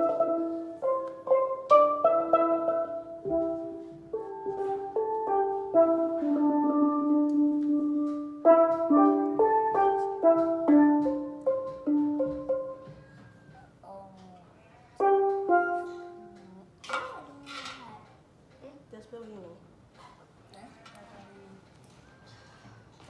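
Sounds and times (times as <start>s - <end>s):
steel pan melody: 0.0s - 13.5s, 15.0s - 16.8s.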